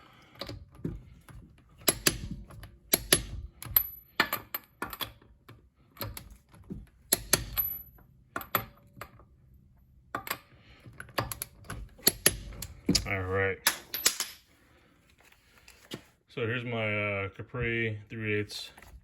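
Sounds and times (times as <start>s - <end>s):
metal sockets clinking: 0.4s - 9.3s, 10.1s - 14.4s.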